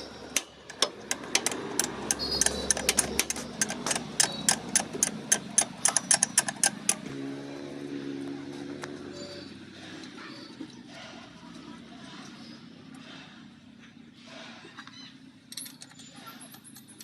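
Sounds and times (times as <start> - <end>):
hand tools clicking on metal: 0.0 - 7.1.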